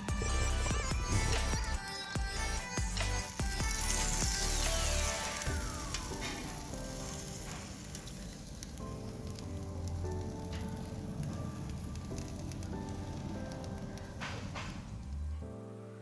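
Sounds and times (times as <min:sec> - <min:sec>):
meat sizzling and crackling: 0:00.0 - 0:15.1
background music: 0:00.0 - 0:16.0.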